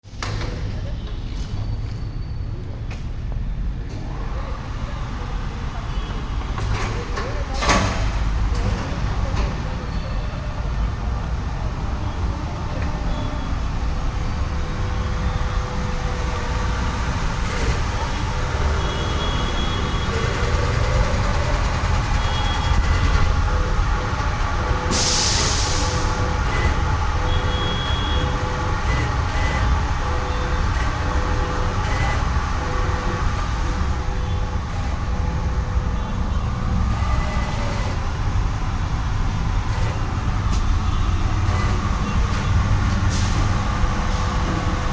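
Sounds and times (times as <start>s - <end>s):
machine low rumble: 8.1s - 44.9s
compressed air hiss: 24.9s - 26.2s.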